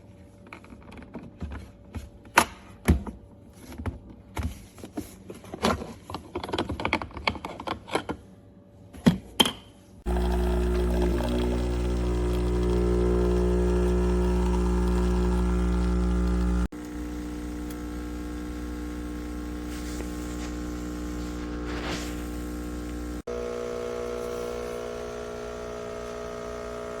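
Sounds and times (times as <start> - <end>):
espresso machine pump humming: 10.1 - 27.0.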